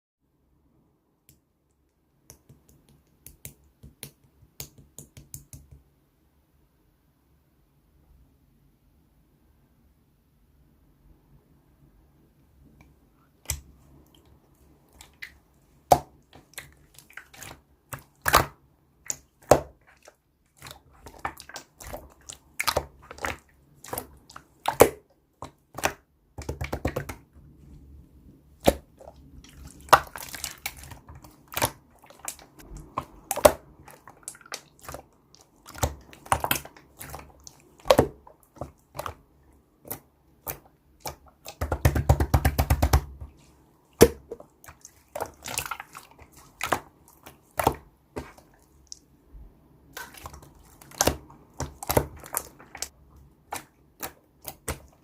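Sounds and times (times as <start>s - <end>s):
slime squished by hand: 13.4s - 27.3s, 28.5s - 39.2s, 39.8s - 49.1s, 49.8s - 55.0s.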